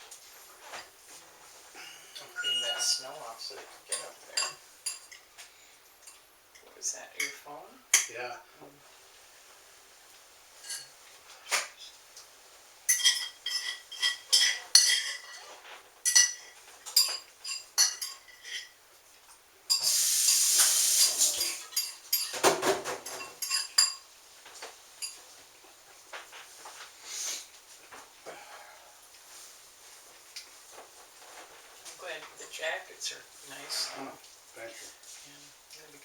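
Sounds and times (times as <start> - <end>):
dishes and cutlery clattering: 2.1 - 5.4, 10.6 - 11.6, 12.9 - 18.8, 19.7 - 25.4.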